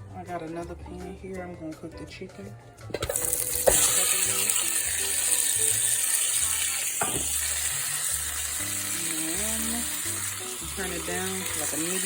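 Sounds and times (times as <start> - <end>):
chicken sizzling in a frying pan: 3.0 - 12.0.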